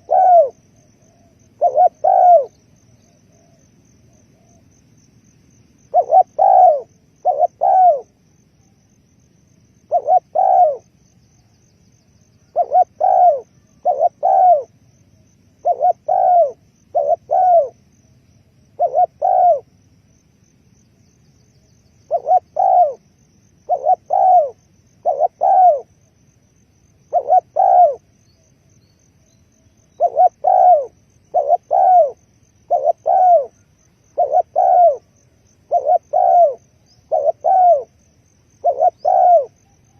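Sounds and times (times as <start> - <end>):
dove cooing: 0.0 - 4.7, 5.9 - 8.8, 9.9 - 11.0, 12.4 - 14.8, 15.6 - 17.8, 18.8 - 19.7, 22.0 - 25.9, 27.0 - 28.1, 29.8 - 39.9.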